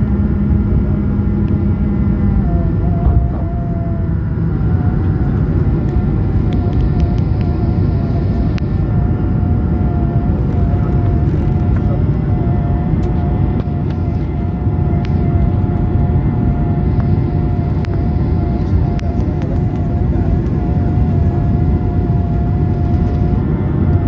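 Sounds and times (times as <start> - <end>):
jet engines rumbling: 0.0 - 24.0.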